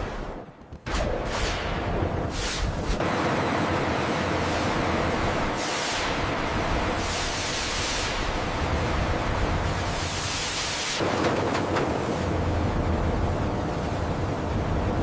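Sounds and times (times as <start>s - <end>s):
industrial machinery rumble: 1.7s - 15.0s
hiss: 5.5s - 8.5s, 9.8s - 11.0s.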